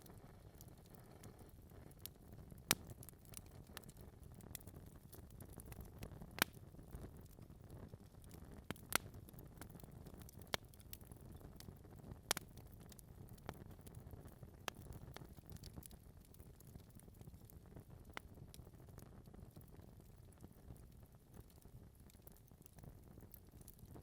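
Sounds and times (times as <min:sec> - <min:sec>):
fire rumbling: 0:00.0 - 0:24.0
logs popping and crackling: 0:00.0 - 0:24.0.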